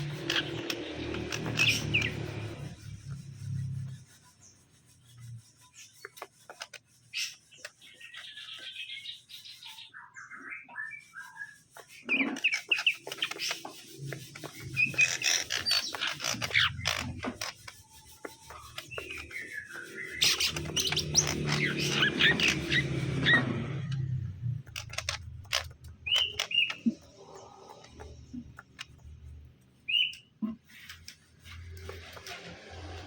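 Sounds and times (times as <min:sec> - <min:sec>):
bird chirping and twittering: 0:00.0 - 0:33.0.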